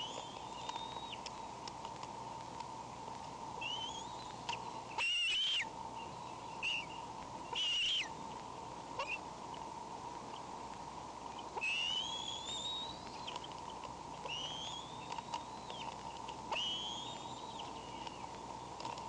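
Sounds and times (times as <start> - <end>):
eagle whistled calls: 0.0 - 1.4, 3.6 - 8.1, 9.0 - 9.2, 11.3 - 13.5, 14.2 - 18.4
high electrical hum: 0.0 - 19.0.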